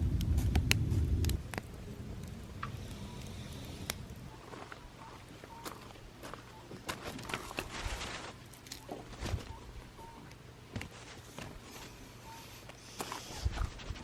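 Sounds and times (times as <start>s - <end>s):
rustling: 6.8s - 9.9s, 10.8s - 14.0s.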